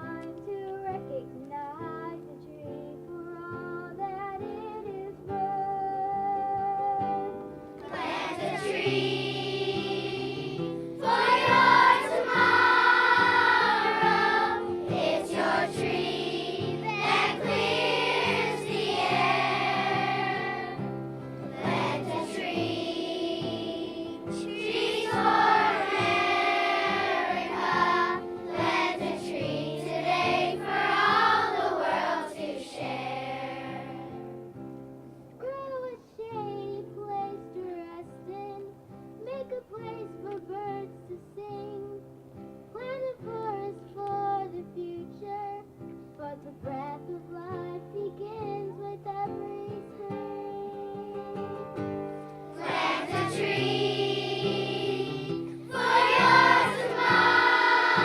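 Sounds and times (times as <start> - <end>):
children singing: 7.8 - 34.2, 52.6 - 58.0.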